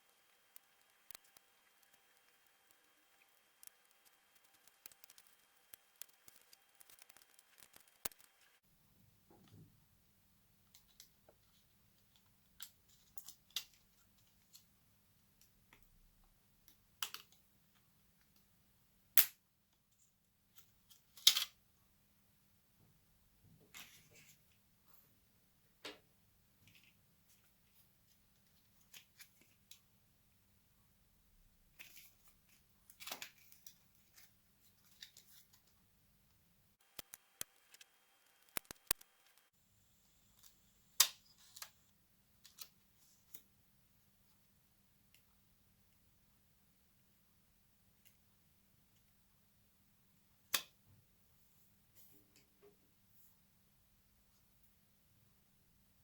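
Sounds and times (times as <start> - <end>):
small clicks and scrapes of tools: 0.0 - 8.6, 36.8 - 39.5.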